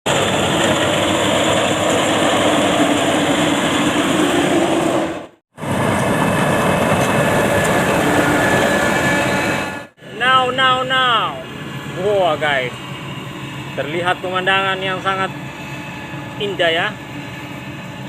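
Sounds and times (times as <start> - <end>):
combine harvester engine running: 0.1 - 18.0.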